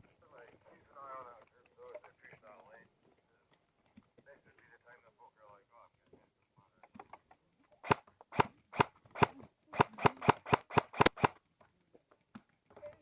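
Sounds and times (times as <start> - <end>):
airsoft rifle shots: 7.8 - 11.4.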